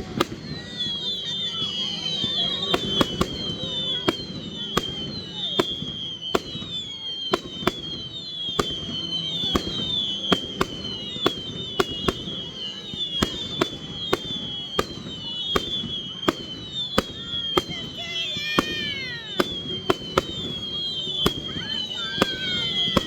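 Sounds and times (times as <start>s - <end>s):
fireworks bangs: 0.0s - 23.0s
high whistling with falling tones: 0.0s - 23.0s.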